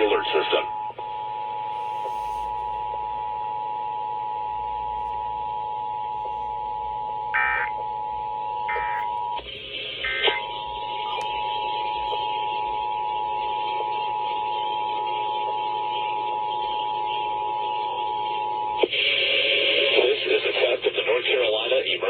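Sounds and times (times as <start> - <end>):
shrill dual-tone alarm: 7.2 - 9.4.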